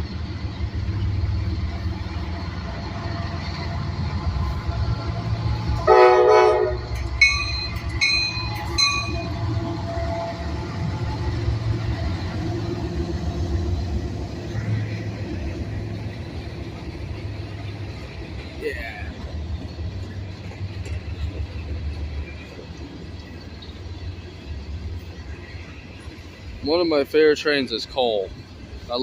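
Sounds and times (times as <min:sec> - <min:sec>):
locomotive air horn: 0:05.8 - 0:10.5.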